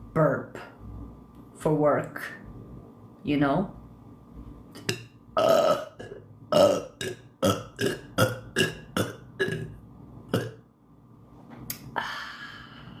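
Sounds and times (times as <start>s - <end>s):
woman burping: 4.8s - 9.7s, 10.3s - 10.6s.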